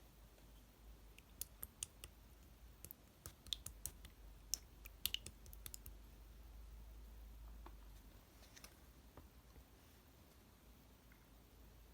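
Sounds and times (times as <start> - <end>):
slime sticky clicks and pops: 2.8 - 5.9.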